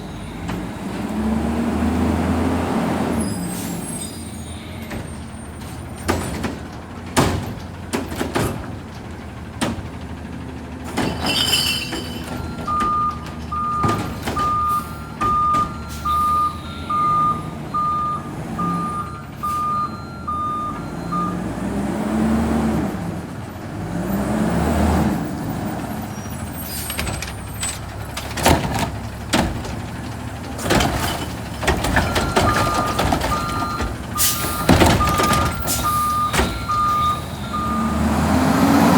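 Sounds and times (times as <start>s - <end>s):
truck reversing beeps: 0.0s - 23.0s, 24.1s - 38.9s
truck engine revving: 0.0s - 38.9s
sharp bangs and knocks: 4.8s - 17.4s, 26.8s - 37.9s.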